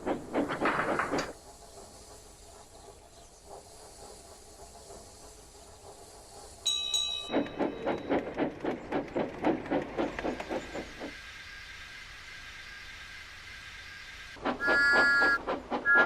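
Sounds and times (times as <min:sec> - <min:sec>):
steam locomotive chuffing: 0:00.0 - 0:16.0
faint steam hiss: 0:01.3 - 0:07.3, 0:10.5 - 0:14.6
steam whistle toot: 0:14.6 - 0:16.0.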